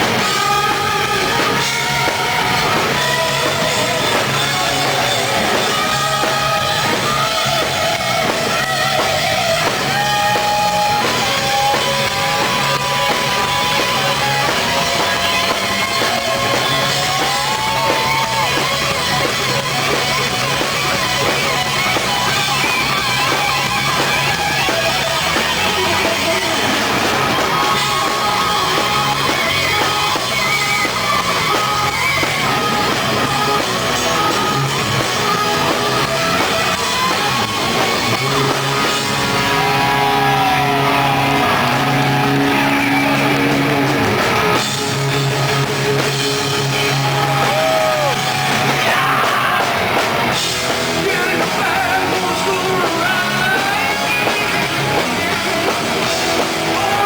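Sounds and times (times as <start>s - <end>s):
drum kit: 0.0s - 57.0s
electric guitar: 0.0s - 57.0s
person singing and shouting: 39.2s - 43.3s, 46.6s - 57.0s.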